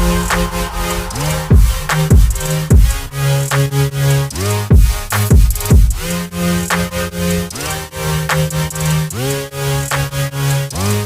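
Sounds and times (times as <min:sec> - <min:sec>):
electronic music with kick drums: 0:00.0 - 0:06.2.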